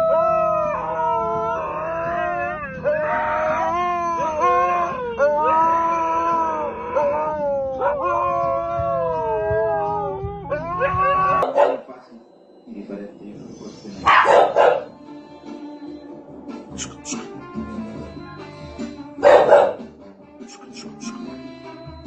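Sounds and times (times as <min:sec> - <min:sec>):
dog howling: 0:00.0 - 0:12.8, 0:13.8 - 0:17.4, 0:19.2 - 0:19.9.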